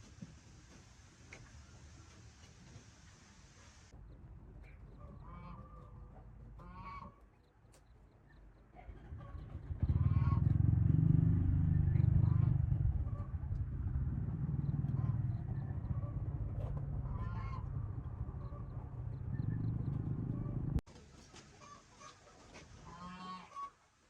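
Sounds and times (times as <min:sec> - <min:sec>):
poultry calling: 0:04.6 - 0:07.5, 0:08.2 - 0:23.8
low rumble: 0:09.0 - 0:20.8.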